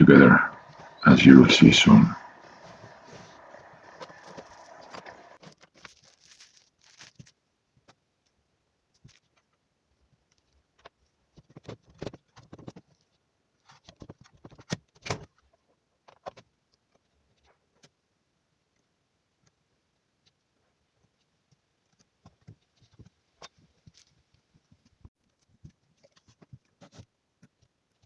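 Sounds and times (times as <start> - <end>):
rustling noise: 0.4 - 7.4.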